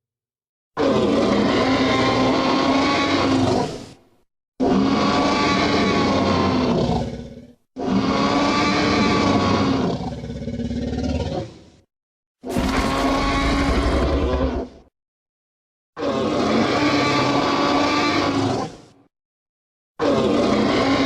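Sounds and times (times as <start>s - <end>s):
dinosaur roar: 0.8s - 4.0s, 4.6s - 11.8s, 12.5s - 14.9s, 16.0s - 18.9s, 20.0s - 21.0s.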